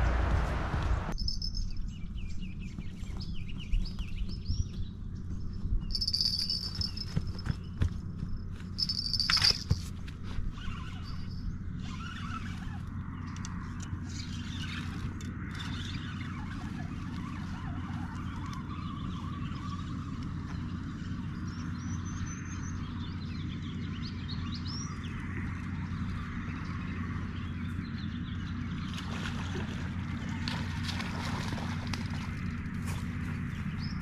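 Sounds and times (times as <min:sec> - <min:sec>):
low rumble: 0:00.0 - 0:10.0
high bird chirps: 0:01.2 - 0:04.7, 0:05.8 - 0:07.8, 0:08.8 - 0:09.8.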